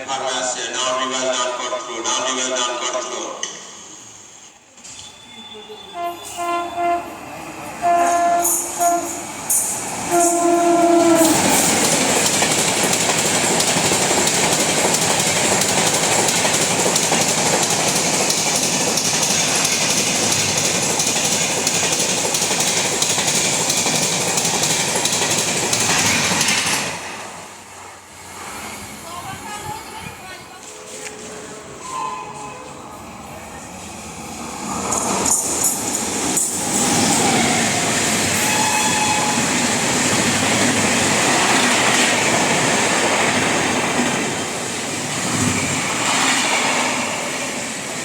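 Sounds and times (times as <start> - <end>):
train passing with wheel clatter: 0.0 - 48.0
locomotive horn blasts: 5.9 - 7.2, 7.8 - 9.3, 10.1 - 11.4.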